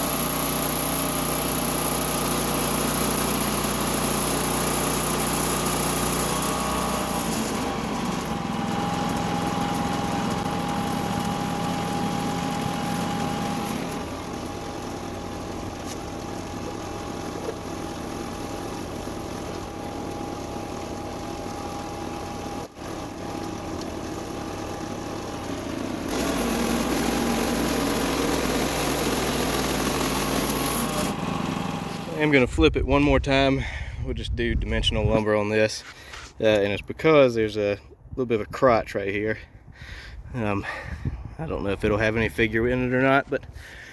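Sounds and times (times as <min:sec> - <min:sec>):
saw blade cutting log: 0:00.0 - 0:32.3
small gas engine running: 0:00.0 - 0:34.0.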